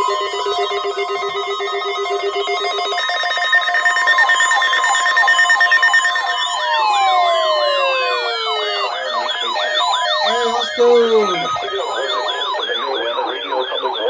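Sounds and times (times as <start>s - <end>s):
siren sweeps: 0.0s - 14.0s
steady electronic alarm tones: 0.0s - 14.0s.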